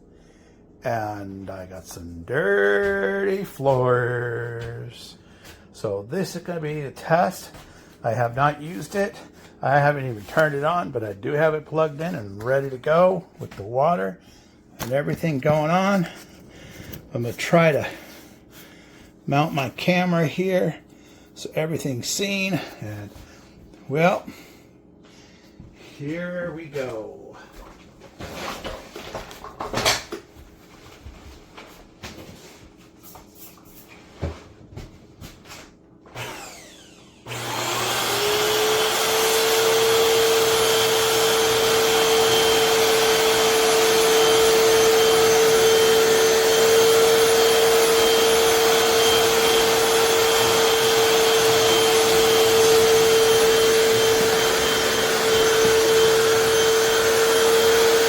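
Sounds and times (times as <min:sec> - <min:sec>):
floor cleaner motor humming: 0:36.2 - 0:58.0.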